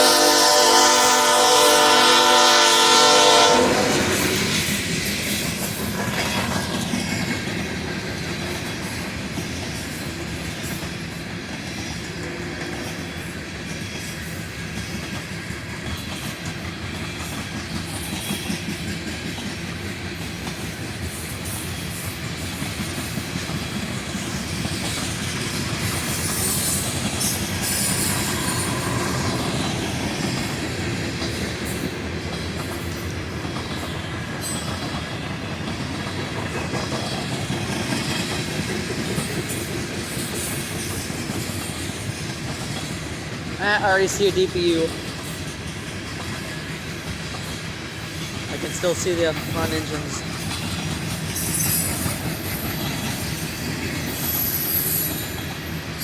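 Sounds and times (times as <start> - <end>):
locomotive horn: 0.0 - 4.2
train cars rumbling on rails: 0.0 - 56.0.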